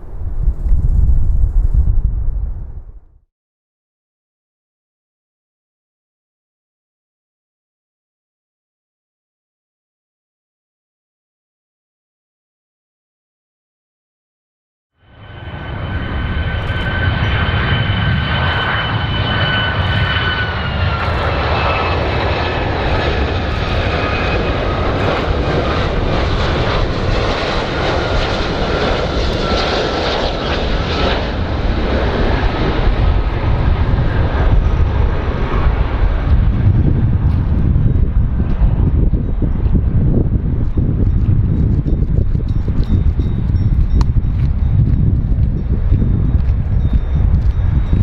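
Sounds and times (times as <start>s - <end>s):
airplane engines running: 0.0s - 3.1s, 15.0s - 48.0s.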